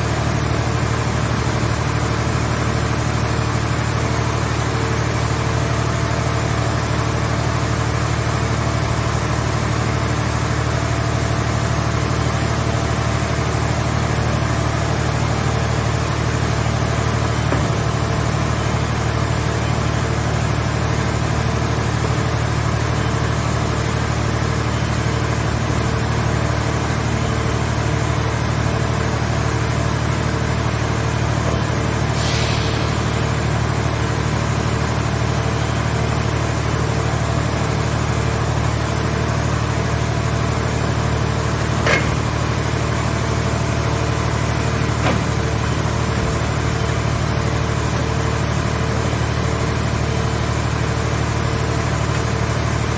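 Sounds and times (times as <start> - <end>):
machine power unit humming: 0.0 - 31.7, 32.8 - 52.9
short hiss: 32.2 - 33.0.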